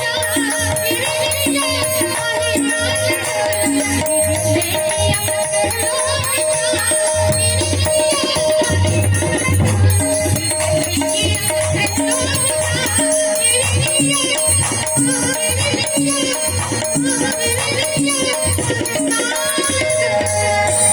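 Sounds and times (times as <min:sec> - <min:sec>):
rattling percussion: 0:00.0 - 0:20.9.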